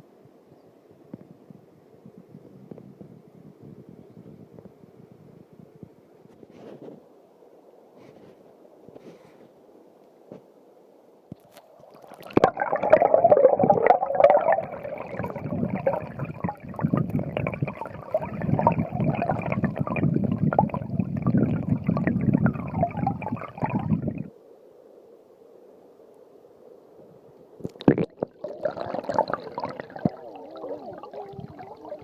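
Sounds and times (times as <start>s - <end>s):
creek water gurgling and splashing: 11.8s - 24.3s, 27.7s - 32.0s.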